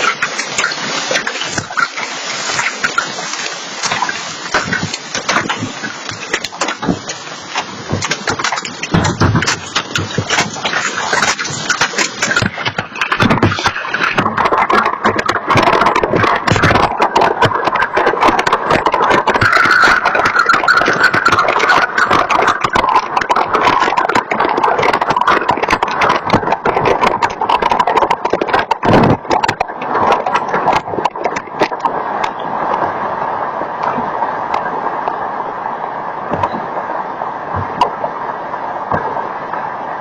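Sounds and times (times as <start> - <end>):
hail clattering on hard surfaces: 0.0 - 31.9.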